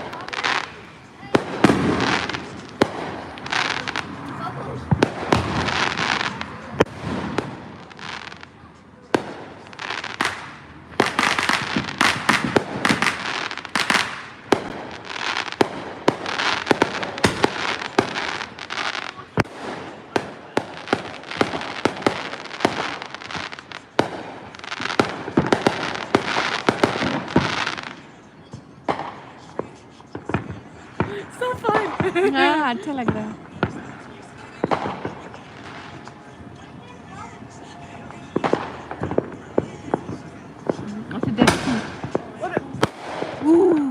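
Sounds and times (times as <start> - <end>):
fireworks banging and crackling: 0.0 - 43.9.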